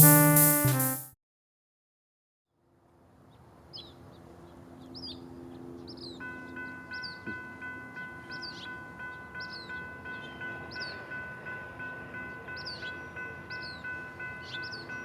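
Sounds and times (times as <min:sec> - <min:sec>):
railroad crossing bell ringing: 0:06.2 - 0:15.0.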